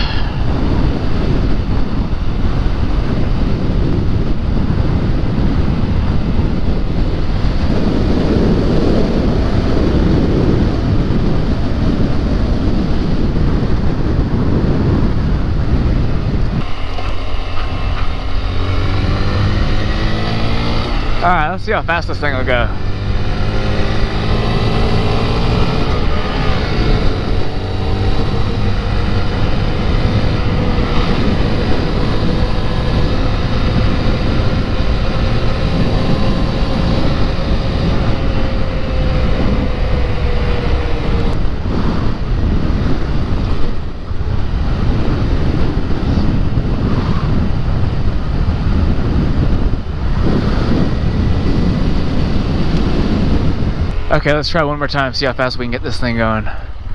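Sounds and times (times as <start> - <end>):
motorcycle engine at full throttle: 0.0 - 56.9
wind noise on microphone: 0.0 - 56.9.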